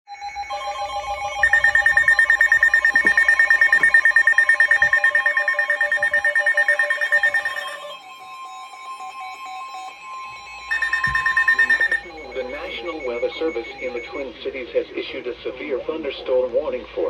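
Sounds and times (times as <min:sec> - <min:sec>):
single steady tone: 0:01.4 - 0:07.9, 0:10.7 - 0:13.7
pulsing electronic alert chord: 0:10.7 - 0:12.1.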